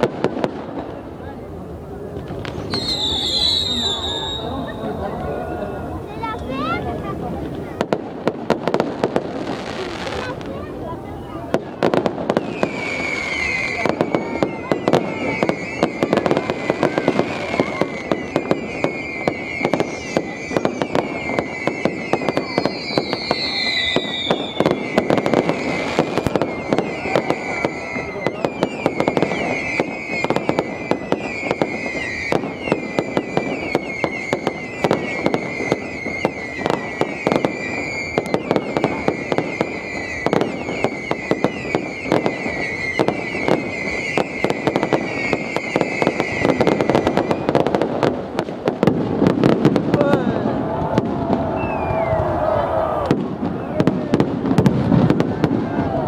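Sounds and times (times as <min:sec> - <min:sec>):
fireworks crackling bangs: 0:00.0 - 0:56.0
high wavering whistle: 0:02.6 - 0:04.9, 0:12.5 - 0:16.1, 0:17.6 - 0:47.6, 0:51.5 - 0:52.4
short falling whistle: 0:02.7 - 0:04.8, 0:12.6 - 0:16.0, 0:17.9 - 0:47.6, 0:51.5 - 0:52.5.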